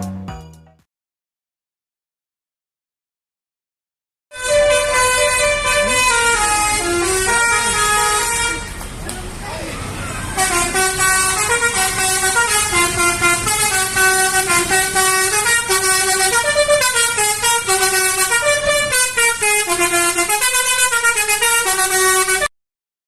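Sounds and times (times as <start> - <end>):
multi-tone bus horn melody: 4.3 - 9.0, 9.8 - 22.5.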